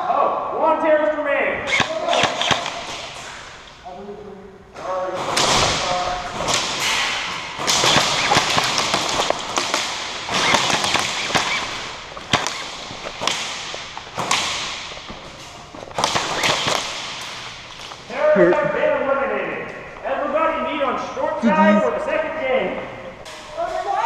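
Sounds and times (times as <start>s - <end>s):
echoing noise: 0.3s - 23.4s
airsoft guns firing: 1.7s - 3.4s, 5.2s - 15.2s, 15.9s - 18.0s.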